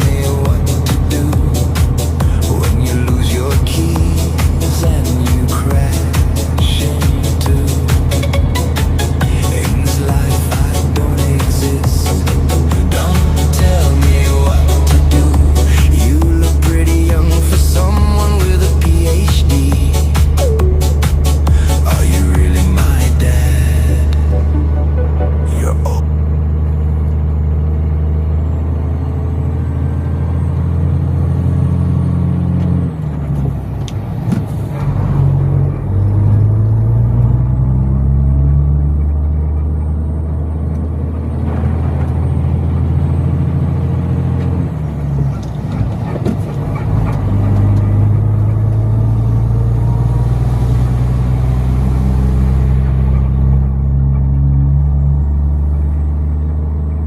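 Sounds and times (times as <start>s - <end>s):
truck engine pulling: 0.0s - 57.0s.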